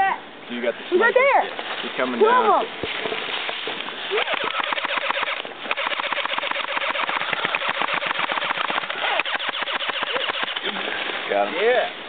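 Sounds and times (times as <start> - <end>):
airsoft guns firing full auto: 4.2 - 10.7.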